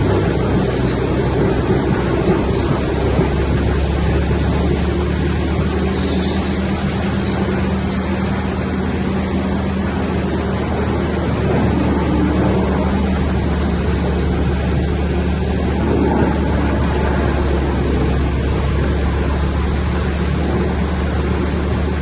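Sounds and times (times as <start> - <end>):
wood chipper droning: 0.0 - 22.0.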